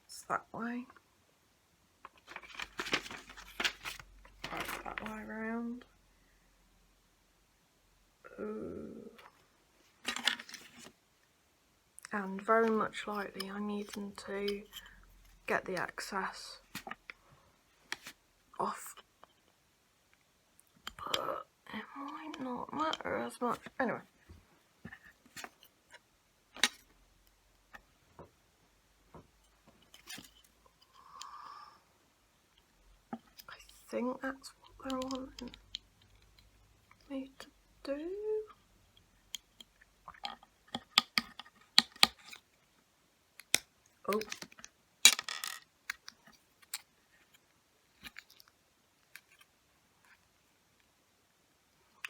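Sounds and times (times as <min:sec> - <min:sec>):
plastic parts clicking and tapping: 0:02.0 - 0:05.2, 0:10.0 - 0:10.9, 0:26.6 - 0:27.0, 0:34.6 - 0:37.5, 0:38.9 - 0:42.5, 0:43.4 - 0:47.4
small clicks and taps: 0:38.9 - 0:42.4.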